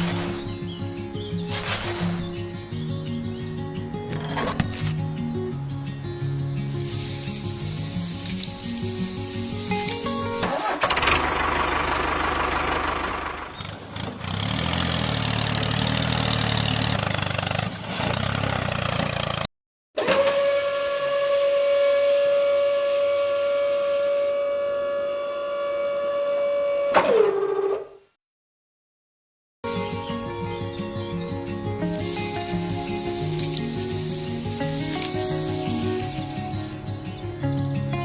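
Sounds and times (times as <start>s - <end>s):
rough engine running: 0.0s - 0.8s, 8.9s - 19.5s
small electric motor whine: 20.0s - 27.0s.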